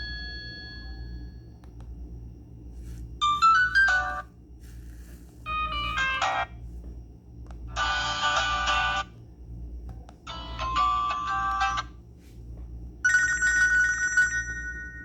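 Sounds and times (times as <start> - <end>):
phone ringtone tunes: 3.2 - 4.2, 5.5 - 6.5, 7.8 - 9.1, 10.3 - 11.8, 13.1 - 15.0.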